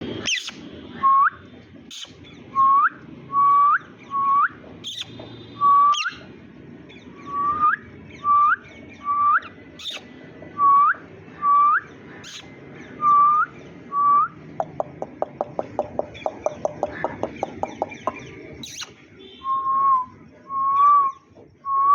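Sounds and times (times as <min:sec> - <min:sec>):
parakeet whistling: 0:00.2 - 0:06.2, 0:07.2 - 0:10.0, 0:10.6 - 0:14.4, 0:17.6 - 0:21.2
parakeet clicking chatter: 0:00.3 - 0:00.7, 0:04.8 - 0:05.2, 0:09.8 - 0:10.0, 0:12.2 - 0:12.5, 0:14.6 - 0:19.0
parakeet clicks: 0:14.6 - 0:18.2.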